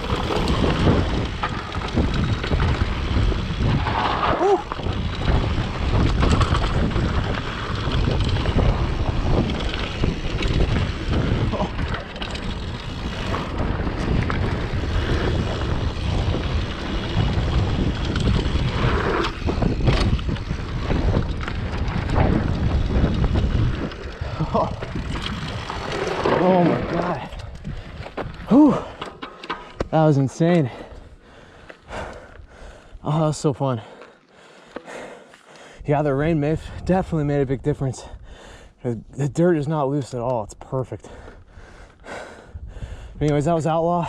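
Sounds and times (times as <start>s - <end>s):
wind buffeting microphone: 0.0s - 29.0s, 35.8s - 38.8s, 40.8s - 44.0s
bike rattling over bumps: 0.0s - 35.2s
tyres on damp dirt: 0.0s - 38.2s.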